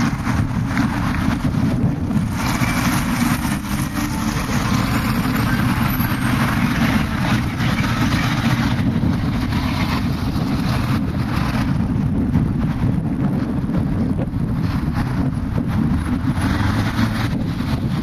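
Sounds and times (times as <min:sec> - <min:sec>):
low street rumble: 0:00.0 - 0:18.0.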